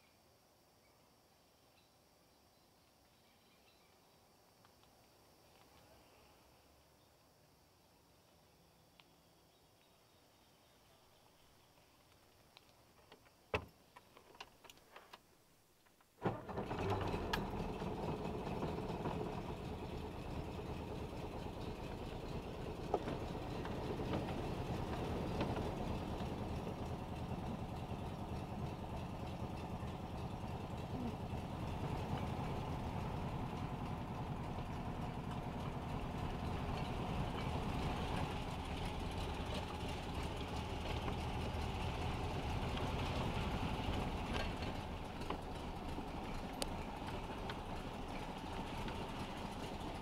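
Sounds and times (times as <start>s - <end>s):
car engine starting and idling: 16.2s - 50.0s.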